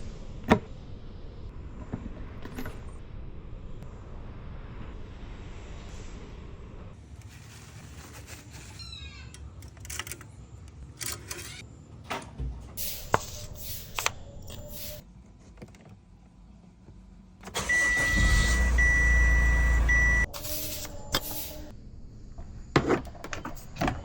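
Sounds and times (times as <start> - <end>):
diesel engine starting and rumbling: 17.4 - 20.8.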